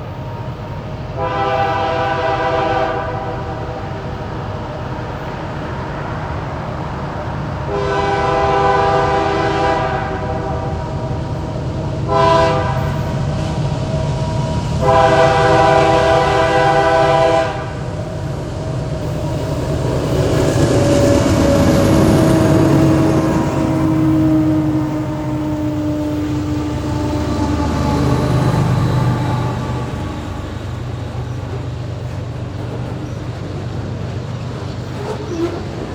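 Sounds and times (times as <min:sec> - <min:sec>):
train rumbling: 0:00.0 - 0:35.9
locomotive horn blasts: 0:01.1 - 0:04.0, 0:07.7 - 0:11.2, 0:12.0 - 0:13.3, 0:14.7 - 0:17.8, 0:21.6 - 0:30.8.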